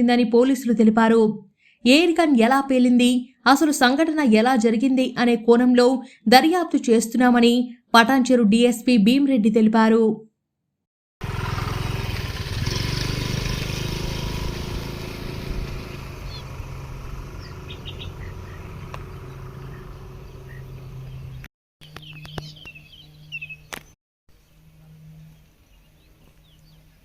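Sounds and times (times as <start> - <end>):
vehicle engine running: 11.2 - 23.6
birds chirping: 15.0 - 27.0.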